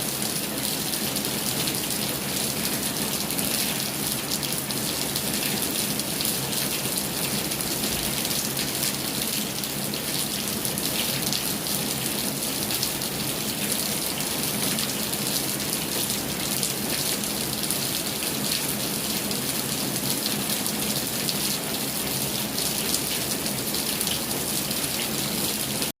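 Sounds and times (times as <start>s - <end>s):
heavy rain falling: 0.0s - 26.0s.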